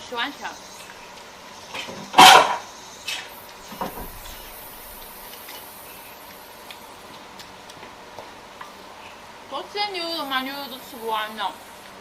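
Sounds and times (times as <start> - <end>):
eating sounds: 0.8 - 7.8.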